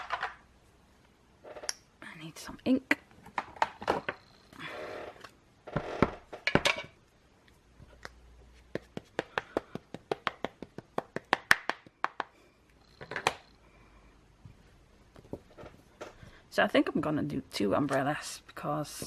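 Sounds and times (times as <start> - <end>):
rustling and handling sounds: 5.0 - 11.4, 14.4 - 16.5
rubber stamp tapping ink pad: 8.7 - 12.3.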